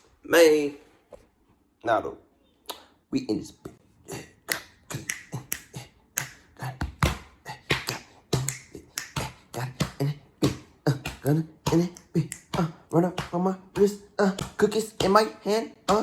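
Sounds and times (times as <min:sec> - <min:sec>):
beatboxing: 0:03.6 - 0:16.0.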